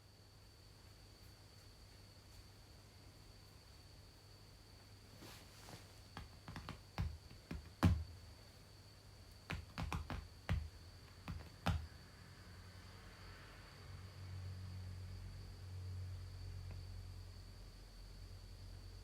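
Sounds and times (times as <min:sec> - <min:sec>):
faint high-pitched whine: 0:00.0 - 0:19.0
light irregular clicks and taps: 0:09.5 - 0:11.9.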